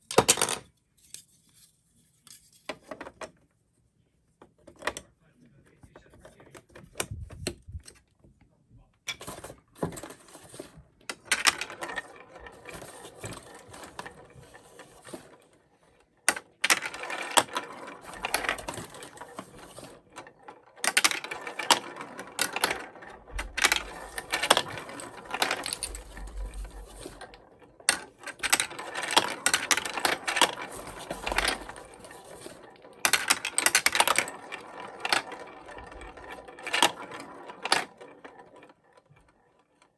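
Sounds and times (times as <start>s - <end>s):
plastic marble run clattering: 0.1s - 0.6s, 9.1s - 39.9s.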